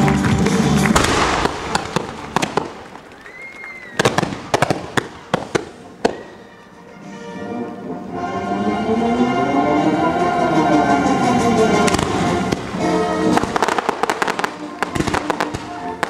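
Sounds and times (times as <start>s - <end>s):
fireworks bangs: 0.1s - 6.5s, 11.6s - 16.0s
firework whistle: 1.0s - 6.7s, 8.1s - 16.0s.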